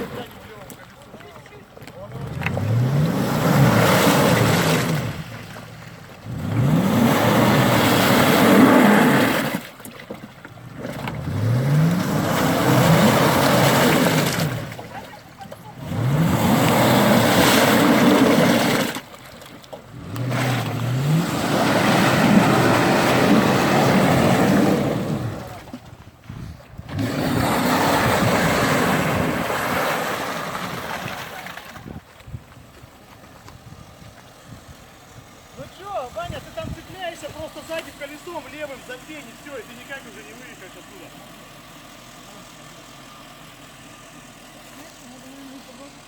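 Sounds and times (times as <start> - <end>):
suv engine revving hard: 2.1 - 5.5, 6.2 - 9.7, 10.6 - 14.9, 15.7 - 19.0, 19.9 - 25.6, 26.8 - 31.3.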